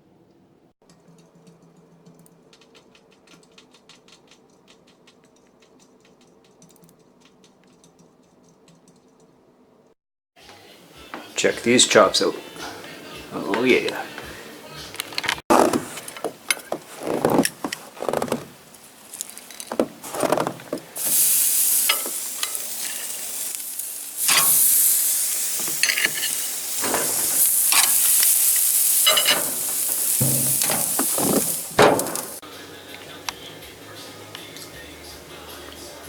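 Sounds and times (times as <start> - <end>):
clatter and scraping in pan: 15.5 - 32.4
meat sizzling in a frying pan: 21.0 - 32.4
pops and clicks: 21.0 - 32.4.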